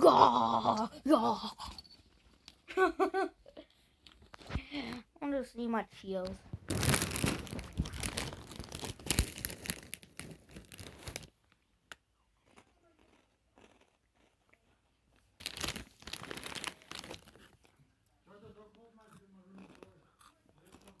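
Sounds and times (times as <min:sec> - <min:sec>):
crinkling rustling: 0:06.0 - 0:11.6, 0:15.1 - 0:17.8.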